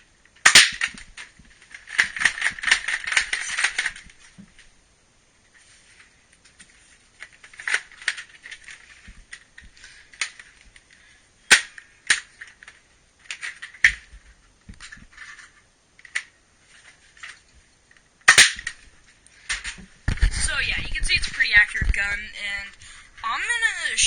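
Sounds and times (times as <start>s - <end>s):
toy blaster plastic clicks and snaps: 0.5s - 1.0s.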